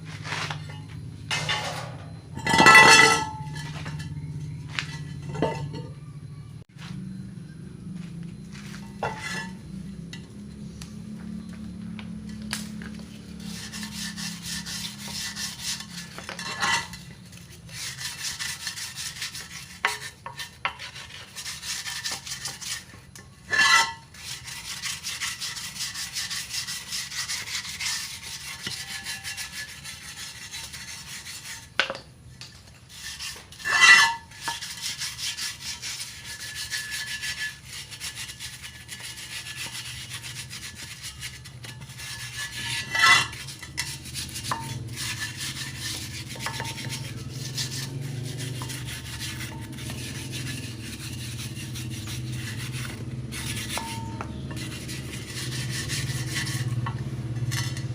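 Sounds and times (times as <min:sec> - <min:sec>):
scraping paint off wheel rim: 0:00.0 - 0:07.2, 0:08.0 - 0:57.9
sharp metallic knocks: 0:53.4 - 0:54.7.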